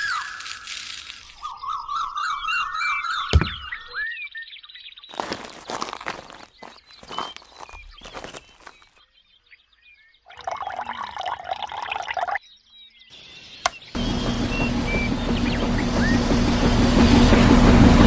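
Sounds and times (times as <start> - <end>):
water pouring and splashing: 10.3 - 12.4
loud steady hum: 14.0 - 18.0.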